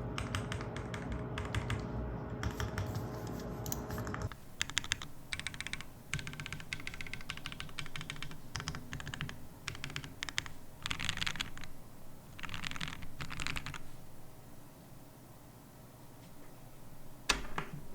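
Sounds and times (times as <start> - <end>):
mechanical keyboard typing: 0.2 - 1.8, 4.0 - 11.8, 12.4 - 13.9.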